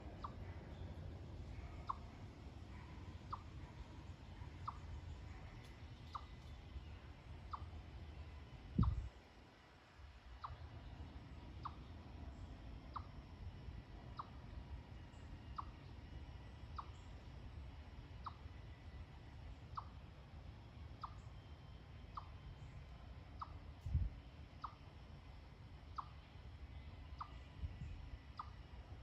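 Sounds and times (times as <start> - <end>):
low steady hum: 0.0 - 29.0.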